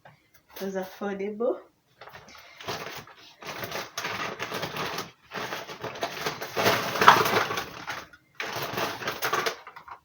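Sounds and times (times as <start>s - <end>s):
packaging crinkling: 2.0s - 10.0s.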